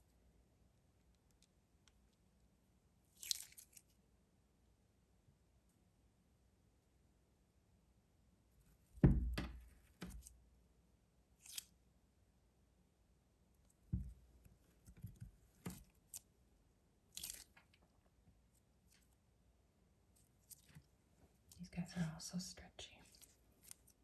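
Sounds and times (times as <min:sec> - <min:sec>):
stress ball squishing: 0:09.0 - 0:10.4, 0:13.9 - 0:16.2.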